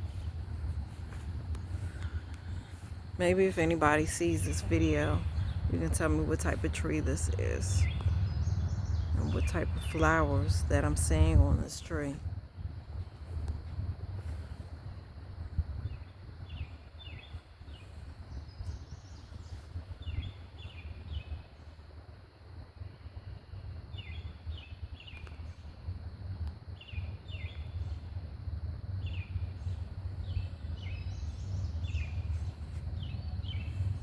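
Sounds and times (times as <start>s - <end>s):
wind buffeting microphone: 0.0s - 34.0s
bird chirping: 2.1s - 12.2s, 29.0s - 34.0s.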